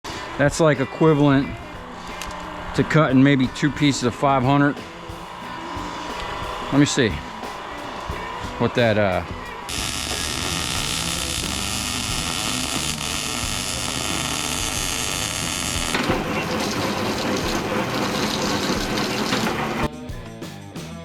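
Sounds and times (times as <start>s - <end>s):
machine motor running: 9.6s - 19.9s.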